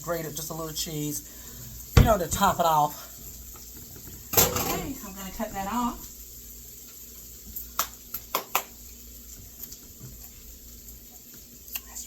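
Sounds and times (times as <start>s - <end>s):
faint steady hiss: 0.0s - 12.0s
clicks and taps from cookware: 7.8s - 8.7s.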